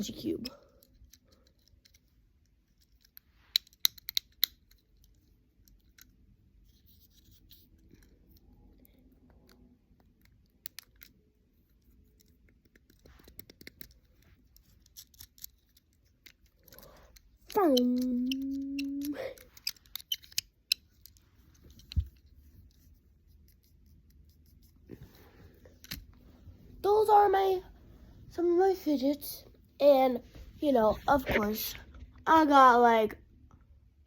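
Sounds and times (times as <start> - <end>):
fidget cube plastic clicks: 0.6 - 22.3.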